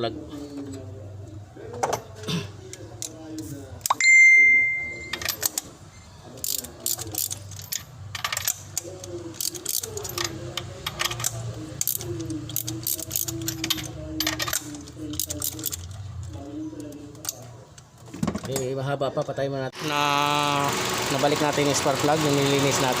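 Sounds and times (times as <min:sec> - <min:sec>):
hand tools clinking on metal: 0:06.4 - 0:16.0.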